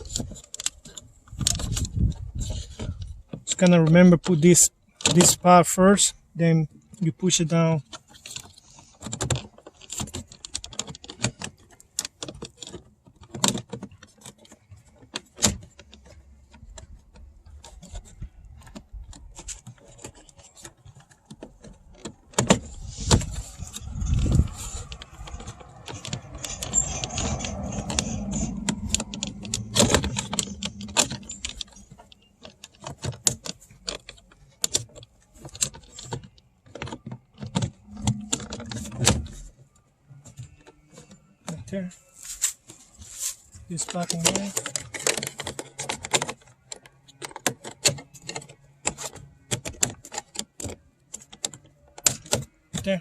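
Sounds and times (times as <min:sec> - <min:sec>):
plastic rubbing and knocking: 0:00.0 - 0:53.0
plastic trim panel clicking and rattling: 0:00.0 - 0:53.0.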